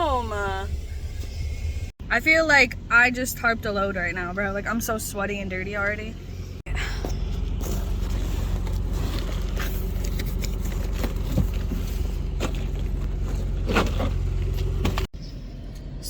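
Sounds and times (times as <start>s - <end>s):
truck engine idling: 0.0s - 16.0s
light rustling and scraping: 6.3s - 15.1s.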